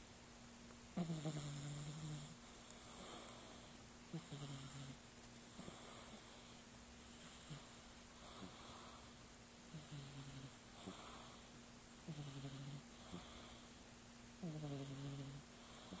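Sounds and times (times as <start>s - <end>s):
cat snoring: 1.0s - 13.7s, 14.4s - 16.0s
cat breathing softly: 5.5s - 9.2s, 12.9s - 13.8s, 15.5s - 16.0s.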